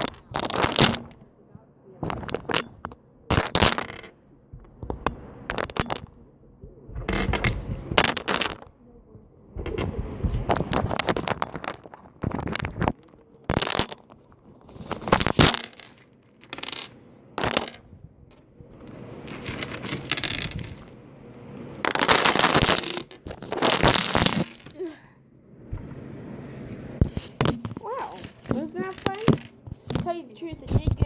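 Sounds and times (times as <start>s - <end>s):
plastic gems clattering: 0.0s - 1.2s, 2.1s - 4.2s, 4.8s - 6.2s, 7.1s - 8.7s, 9.8s - 21.0s, 21.8s - 24.9s, 27.0s - 30.2s.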